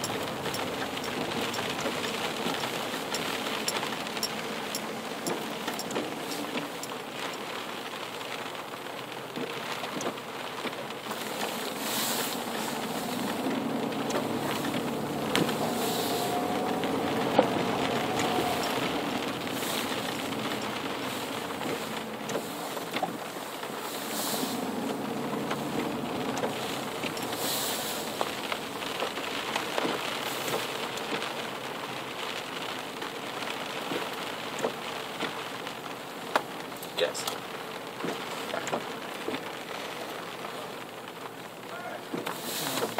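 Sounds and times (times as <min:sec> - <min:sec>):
car engine running: 0:00.0 - 0:07.8, 0:10.5 - 0:29.0
hiss and patter of water: 0:00.0 - 0:42.9.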